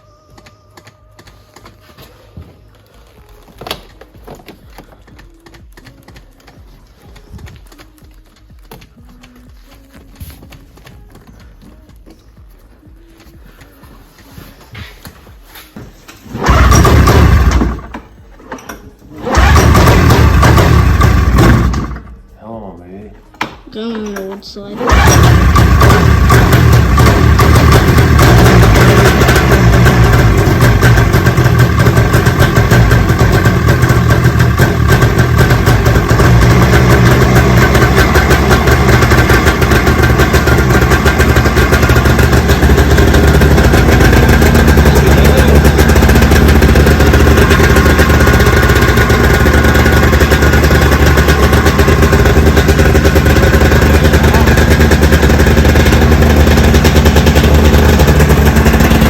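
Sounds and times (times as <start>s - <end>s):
snowmobile engine running: 24.9s - 59.0s.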